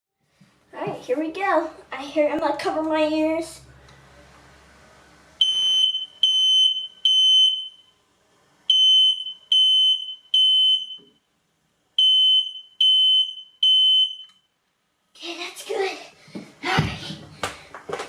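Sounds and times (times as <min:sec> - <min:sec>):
smoke alarm beeping: 0:05.4 - 0:08.0, 0:08.7 - 0:11.2, 0:12.0 - 0:14.5.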